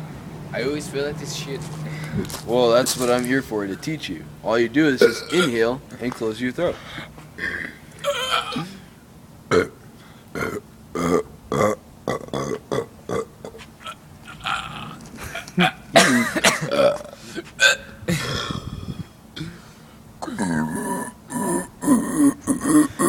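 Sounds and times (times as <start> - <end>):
person belching: 5.0 - 5.6, 7.4 - 8.9, 9.5 - 15.0, 15.6 - 19.6, 20.2 - 23.0.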